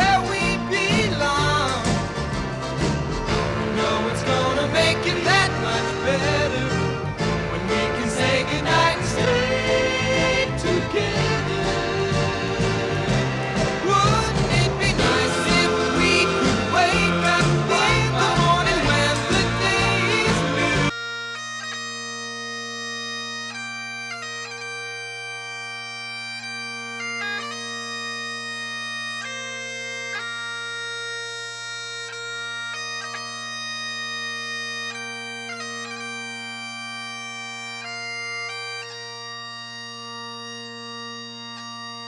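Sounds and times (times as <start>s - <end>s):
bagpipe music: 0.0s - 42.0s
loud music cut off: 0.8s - 20.9s.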